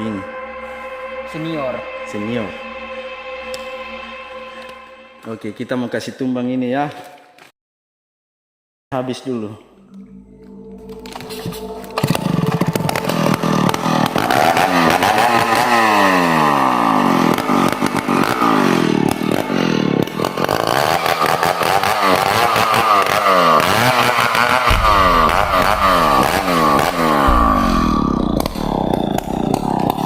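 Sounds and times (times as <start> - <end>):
chainsaw cutting wood: 12.0 - 30.0.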